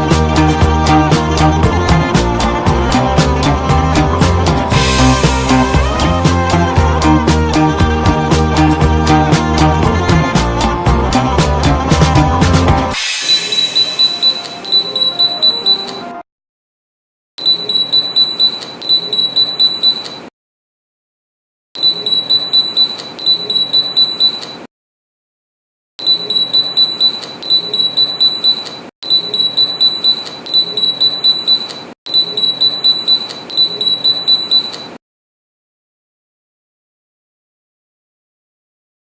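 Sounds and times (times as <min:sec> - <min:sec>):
high-pitched pulsing siren beep: 0:13.0 - 0:16.0, 0:17.4 - 0:20.0, 0:21.8 - 0:24.4, 0:26.0 - 0:34.8.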